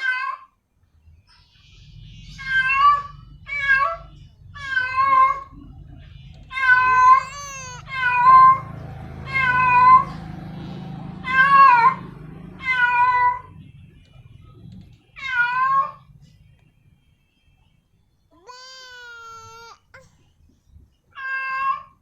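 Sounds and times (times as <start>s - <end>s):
cat meowing: 6.5s - 8.6s, 18.4s - 20.0s, 21.2s - 22.0s.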